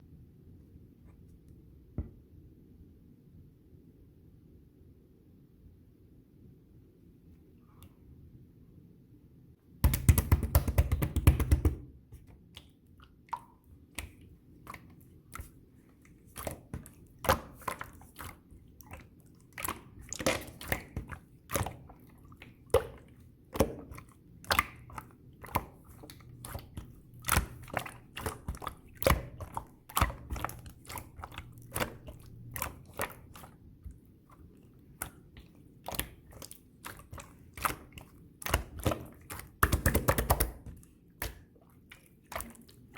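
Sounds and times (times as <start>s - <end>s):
slime crackling: 16.3s - 41.4s.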